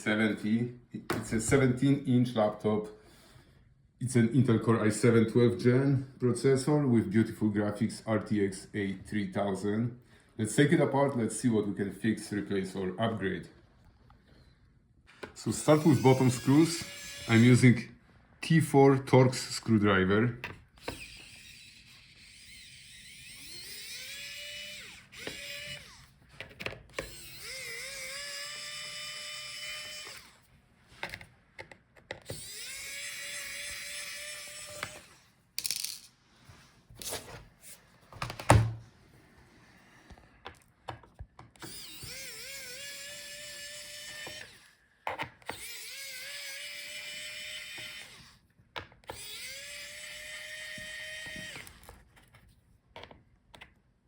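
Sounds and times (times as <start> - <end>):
electric screwdriver motor whining: 15.4 - 17.7, 20.8 - 26.2, 26.9 - 30.5, 32.2 - 35.3, 41.6 - 44.8, 45.4 - 48.4, 49.0 - 51.9.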